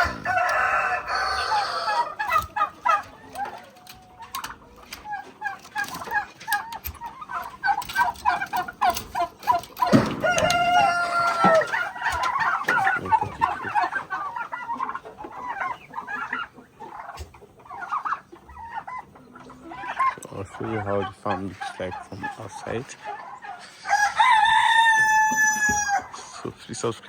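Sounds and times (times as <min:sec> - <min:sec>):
rooster crowing: 0:00.0 - 0:02.2, 0:09.9 - 0:12.8, 0:23.8 - 0:26.1
chickens clucking: 0:00.0 - 0:27.0.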